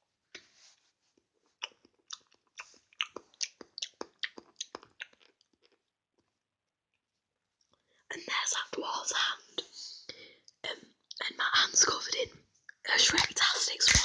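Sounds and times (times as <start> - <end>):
wet mouth chewing sounds: 1.6 - 6.3.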